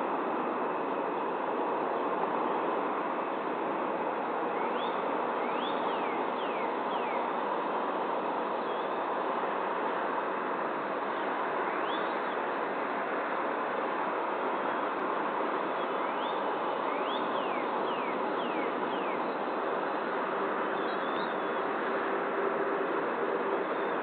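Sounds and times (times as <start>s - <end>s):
outdoor background noise: 0.0s - 24.0s
whistled bird calls: 4.6s - 7.3s, 11.7s - 12.4s, 15.8s - 19.4s, 20.8s - 21.6s, 23.7s - 24.0s.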